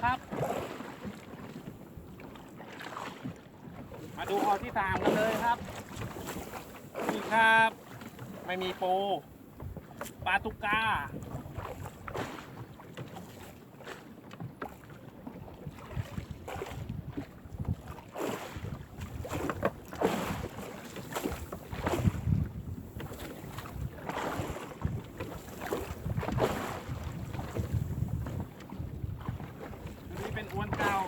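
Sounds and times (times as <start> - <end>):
water splashing around hull: 0.0 - 31.0
wind buffeting microphone: 9.5 - 12.2, 15.7 - 18.0, 21.2 - 31.0.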